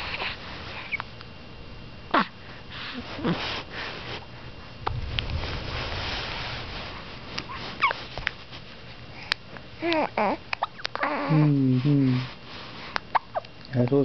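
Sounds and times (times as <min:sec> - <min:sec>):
baby whimpering: 0:02.1 - 0:03.4, 0:09.8 - 0:11.8.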